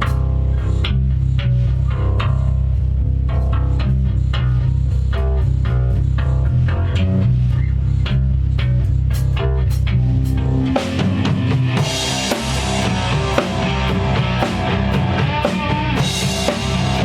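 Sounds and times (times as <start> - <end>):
deep bass guitar notes: 0.0 - 17.0
plucked guitar riff: 10.1 - 17.0.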